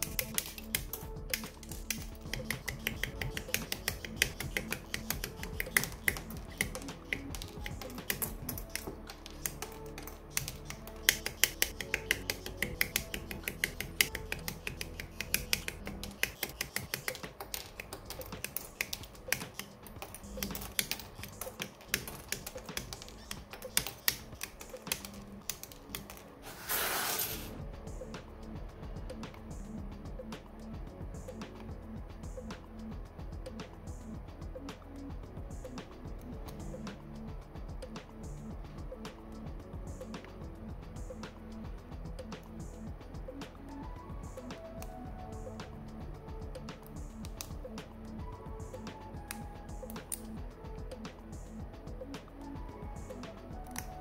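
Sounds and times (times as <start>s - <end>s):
background music: 0.0s - 54.0s
short hiss: 26.5s - 27.6s.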